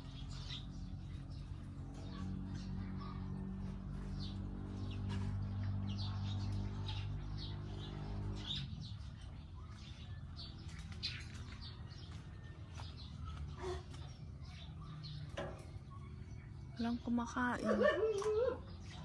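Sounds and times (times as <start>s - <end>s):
low mechanical hum: 0.0s - 19.0s
small birds chirping: 0.0s - 19.0s.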